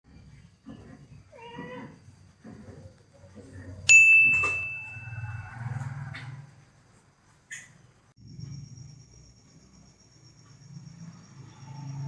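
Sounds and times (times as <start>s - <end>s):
bright ding: 3.9s - 5.6s.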